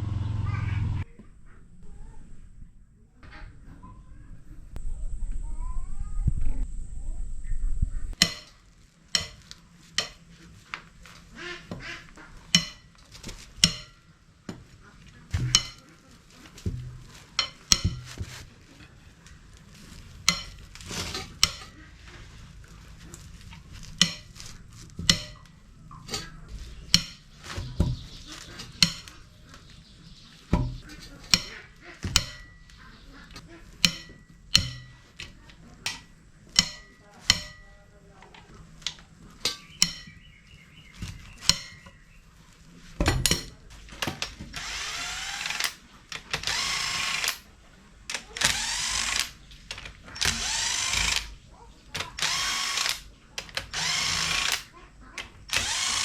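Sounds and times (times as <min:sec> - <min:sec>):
metal engine parts clinking: 0:08.2 - 0:29.8, 0:30.4 - 0:56.0.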